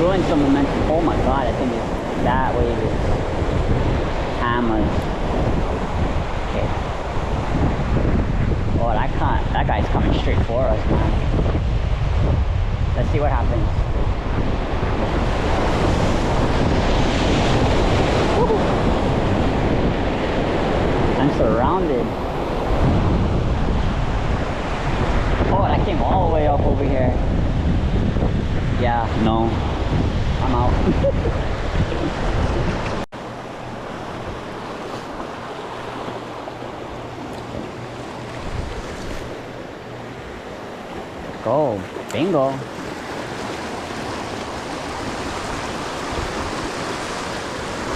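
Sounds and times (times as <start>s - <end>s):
ocean surf washing in: 0.0s - 47.9s
wind rumbling on microphone: 0.0s - 47.9s
ocean wave washing over rocks: 40.4s - 47.9s.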